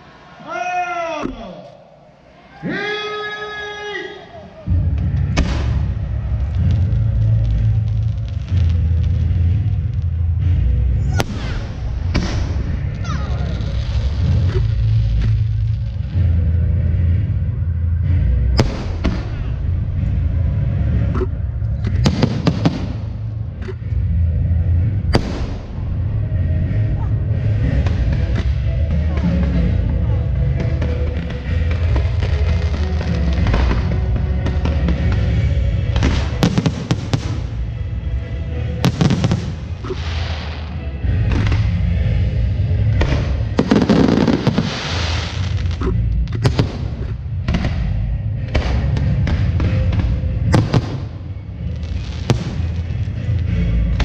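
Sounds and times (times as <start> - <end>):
loud music with low bass: 4.6 - 54.0
low rumble: 4.6 - 54.0
fireworks bangs: 4.9 - 16.3, 21.9 - 23.4, 25.1 - 26.0, 27.7 - 37.8, 38.8 - 41.9, 42.8 - 54.0.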